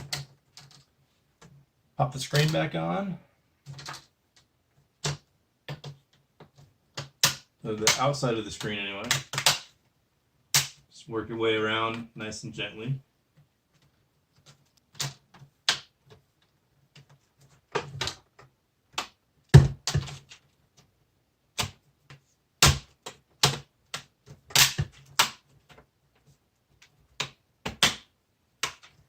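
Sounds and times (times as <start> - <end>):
plastic clips snapping into place: 22.6 - 25.4.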